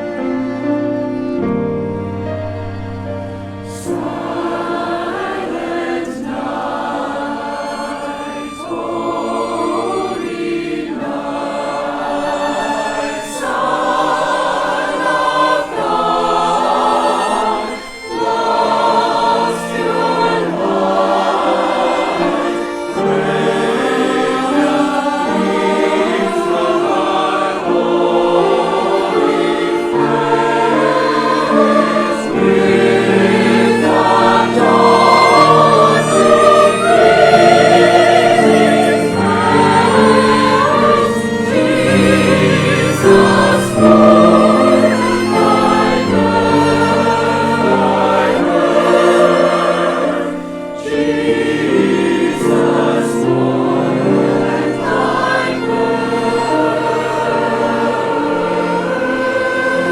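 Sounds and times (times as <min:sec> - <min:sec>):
church choir singing: 0:00.0 - 0:59.9
orchestra playing: 0:00.0 - 0:59.9.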